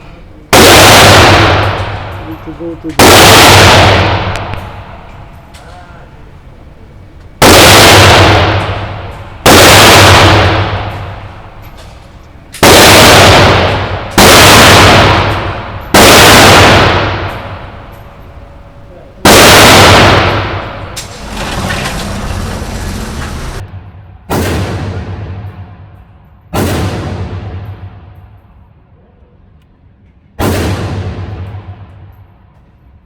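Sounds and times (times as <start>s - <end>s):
rifle shots echoing: 0.5s - 5.4s, 7.4s - 21.7s.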